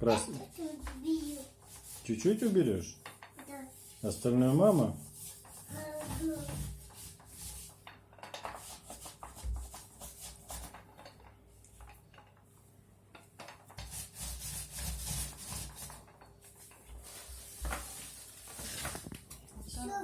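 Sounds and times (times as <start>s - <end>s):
paintbrush scraping on wall: 0.0s - 12.3s, 13.2s - 20.0s.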